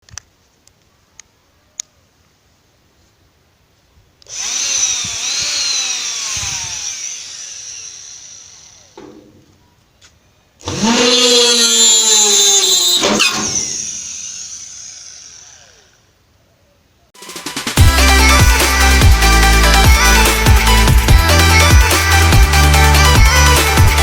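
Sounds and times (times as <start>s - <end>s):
small electric motor whining: 4.3s - 9.0s, 10.6s - 16.2s.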